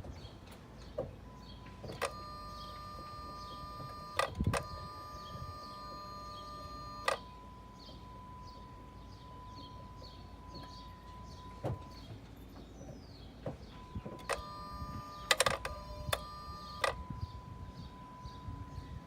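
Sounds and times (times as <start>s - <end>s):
sharp clicks: 1.8s - 7.3s, 14.0s - 17.0s
buzzing tone: 1.9s - 8.7s, 13.8s - 19.0s.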